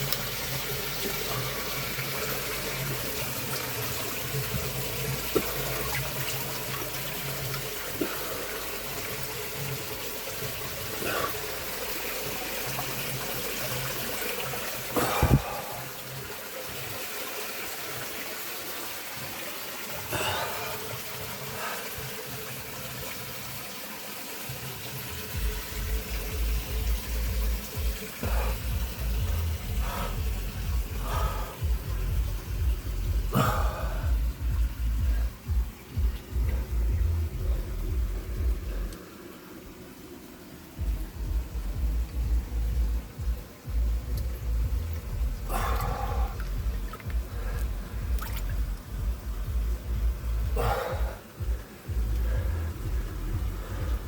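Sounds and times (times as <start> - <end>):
waterfall rushing: 10.2 - 22.4
low thumps: 25.4 - 38.9, 40.8 - 54.0.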